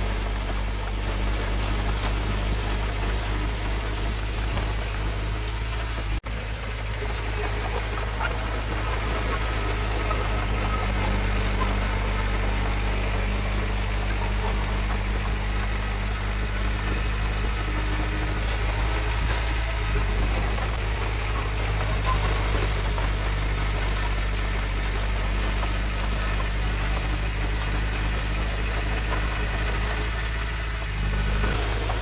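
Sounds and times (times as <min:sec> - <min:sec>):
diesel engine running: 0:00.0 - 0:32.0.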